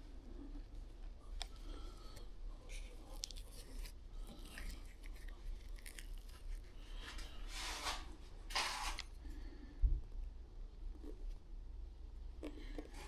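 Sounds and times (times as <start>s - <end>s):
scraping and rustling handling sounds: 0.0s - 9.4s
steady low hum: 0.0s - 13.0s.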